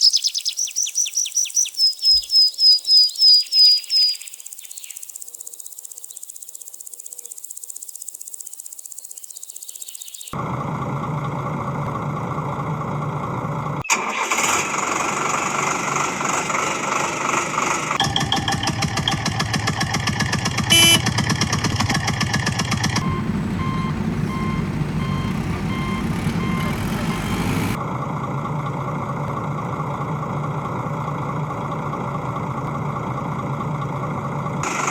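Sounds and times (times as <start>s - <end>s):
high chirping pulses: 0.0s - 10.4s, 20.7s - 21.0s, 23.0s - 27.8s
vehicle engine running: 10.4s - 13.8s, 14.5s - 34.9s.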